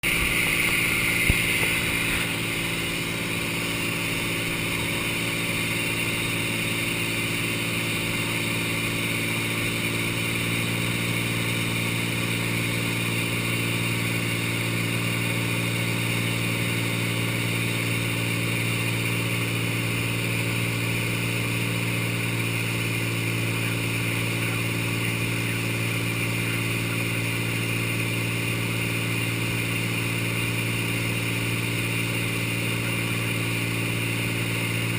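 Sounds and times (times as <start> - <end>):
light plane engine droning: 0.0 - 34.9.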